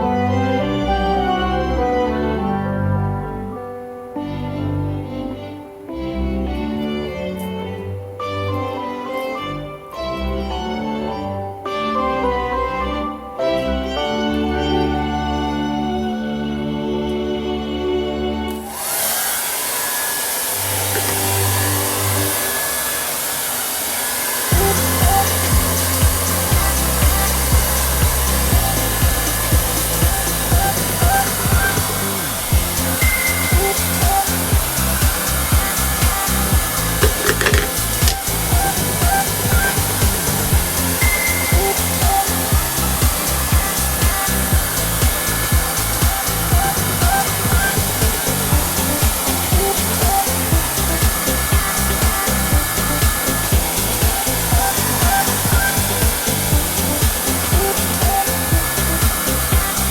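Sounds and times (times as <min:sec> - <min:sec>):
soft background music: 0:00.0 - 0:19.0, 0:24.5 - 0:59.9
hair dryer blowing: 0:18.5 - 0:59.9.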